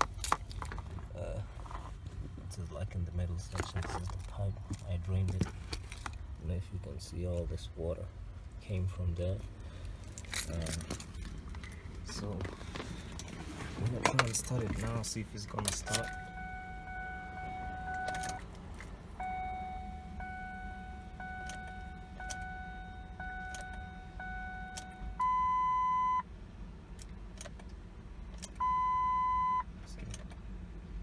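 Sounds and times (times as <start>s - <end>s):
keys clicking: 10.1s - 20.2s
dashboard warning chimes: 12.0s - 26.3s, 28.5s - 29.8s
loud electronic beeps: 15.9s - 18.4s, 19.2s - 26.2s.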